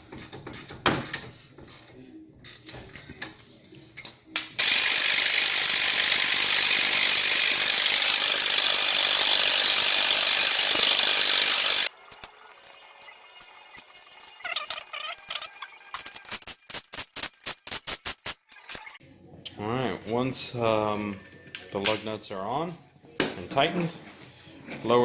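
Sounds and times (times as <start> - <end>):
power tool running: 4.6 - 11.9
ratchet clicking: 4.6 - 12.2.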